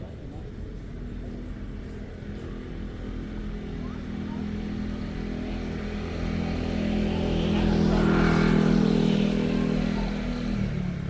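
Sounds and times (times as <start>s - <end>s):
vehicle passing by: 2.5s - 11.0s.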